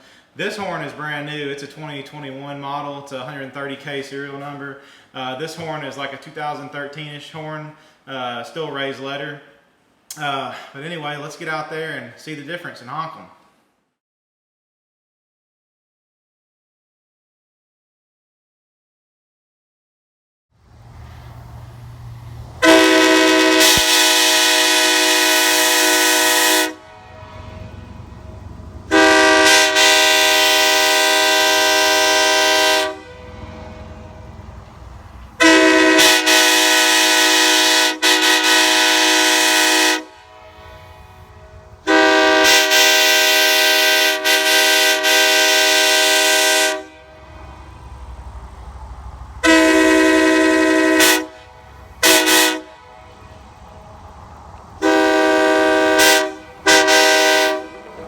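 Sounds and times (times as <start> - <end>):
train horn blasts: 22.6 - 48.8, 49.4 - 58.0.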